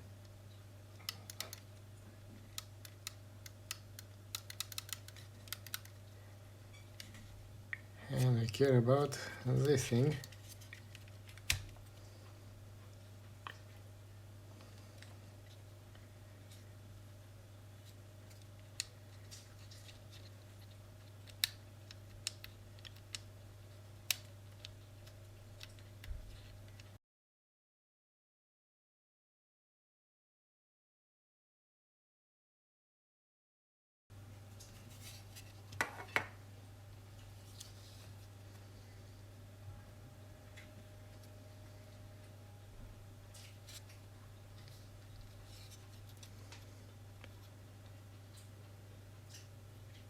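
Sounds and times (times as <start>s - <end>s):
steady low hum: 0.0s - 27.0s, 34.1s - 50.0s
plastic parts clicking: 1.1s - 1.6s, 2.5s - 6.0s, 19.8s - 23.3s
plastic parts clicking and tapping: 2.5s - 6.0s.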